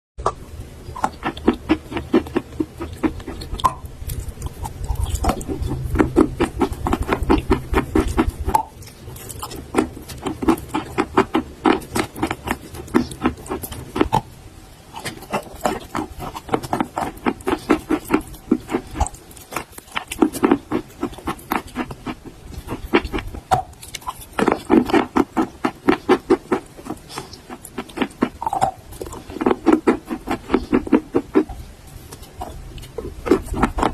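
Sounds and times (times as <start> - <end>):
low hum: 0.2 - 25.6
chalk being chewed crunching: 0.2 - 33.9.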